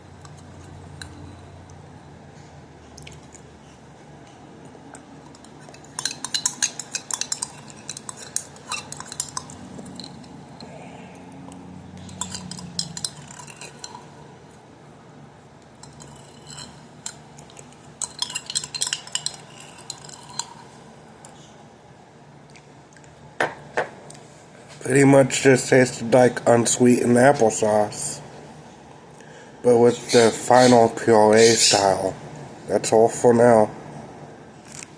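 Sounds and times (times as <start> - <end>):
spoon clinking on container: 5.3 - 10.4, 12.0 - 14.1, 15.8 - 17.2, 18.0 - 20.6.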